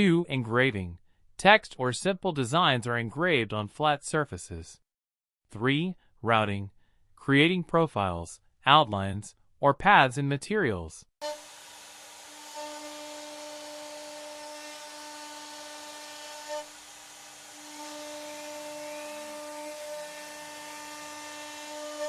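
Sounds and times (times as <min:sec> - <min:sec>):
router spindle whining: 0:11.2 - 0:22.0.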